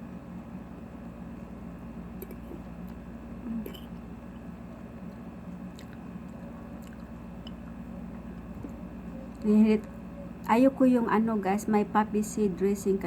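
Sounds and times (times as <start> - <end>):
steady low hum: 0.0 - 13.0
chewing salad: 2.2 - 4.4, 5.0 - 10.5.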